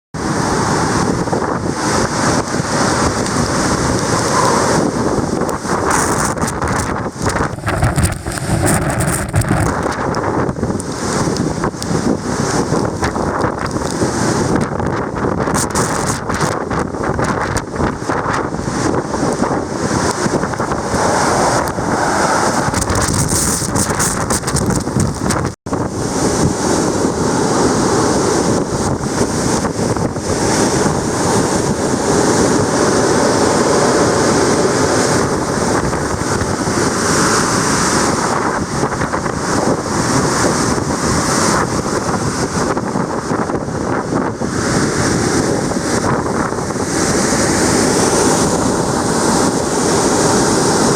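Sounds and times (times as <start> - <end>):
wind and heavy rain roaring: 0.2 - 50.9.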